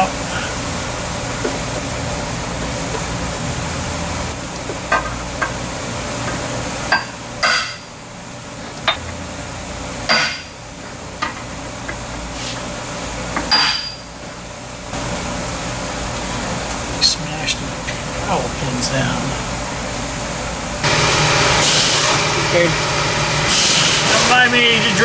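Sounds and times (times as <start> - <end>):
hammer striking metal: 10.1 - 10.5.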